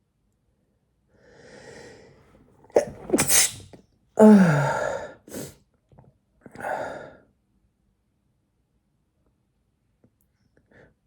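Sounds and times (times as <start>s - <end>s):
man sneezing: 2.8s - 5.5s
short breaths: 2.8s - 5.5s.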